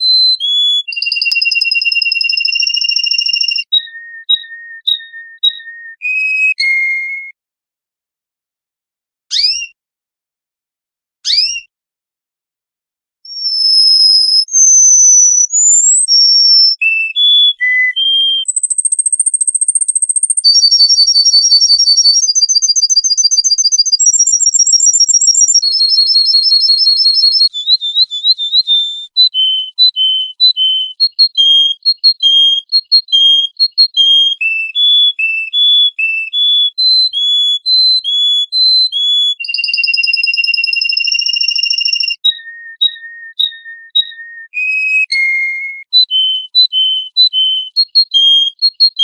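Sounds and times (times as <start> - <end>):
songbird singing whistled notes: 0.0 - 7.4, 9.3 - 9.8, 11.3 - 11.7, 13.3 - 49.0.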